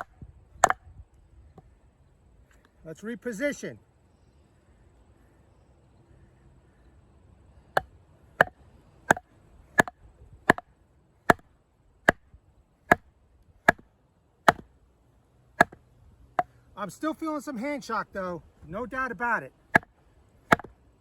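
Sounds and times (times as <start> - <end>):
baton striking blade spine: 0.0 - 0.8, 7.8 - 10.7, 11.3 - 12.2, 12.9 - 13.9, 14.5 - 14.7, 15.6 - 15.8, 19.7 - 19.9, 20.5 - 20.8.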